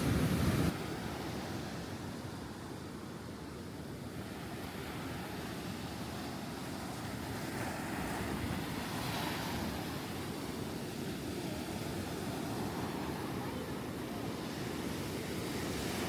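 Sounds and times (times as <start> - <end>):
wind buffeting microphone: 0.0 - 0.8
surf breaking on beach: 0.0 - 1.2.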